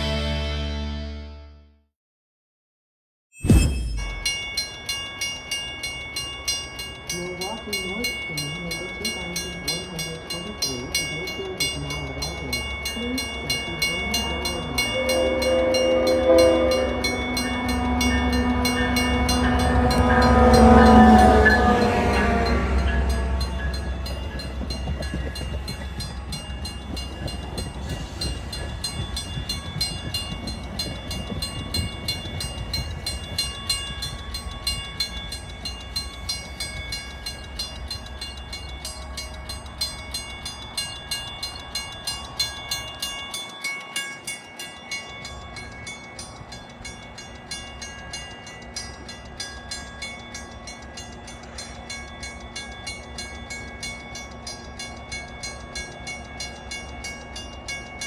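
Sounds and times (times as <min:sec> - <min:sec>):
steady high tones: 0:03.4 - 0:58.0
train low rumble: 0:03.9 - 0:58.0
train wheels clicking over rail joints: 0:16.9 - 0:58.0.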